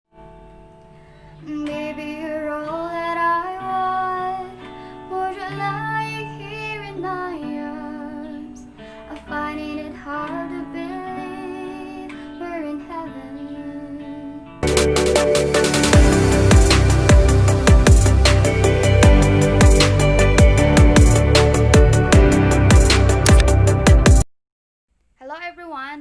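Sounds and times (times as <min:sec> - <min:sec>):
person singing: 0:01.4 - 0:24.2
plucked guitar: 0:13.0 - 0:24.2.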